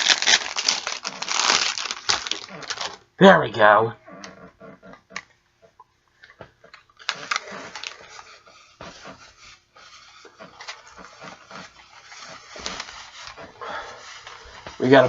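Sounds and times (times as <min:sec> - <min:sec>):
fabric and packaging rustling: 0:00.0 - 0:03.1, 0:07.0 - 0:15.0.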